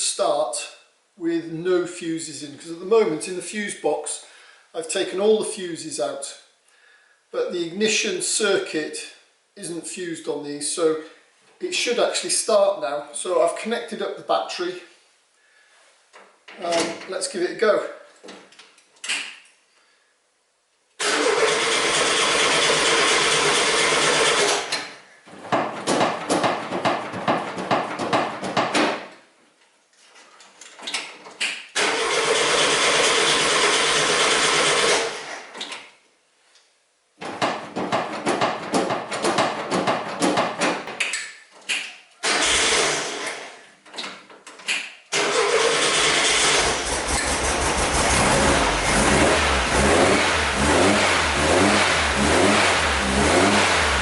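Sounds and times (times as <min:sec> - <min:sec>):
van engine cranking and firing: 0:21.0 - 0:24.7, 0:31.8 - 0:35.4, 0:42.2 - 0:43.5, 0:45.1 - 0:54.0.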